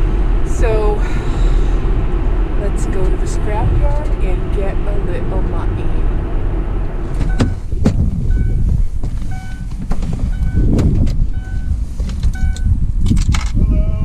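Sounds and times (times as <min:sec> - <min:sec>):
engine and road rumble: 0:00.0 - 0:14.0
knocks and rattles: 0:07.0 - 0:11.4
short high beep: 0:08.3 - 0:08.6, 0:09.3 - 0:09.7.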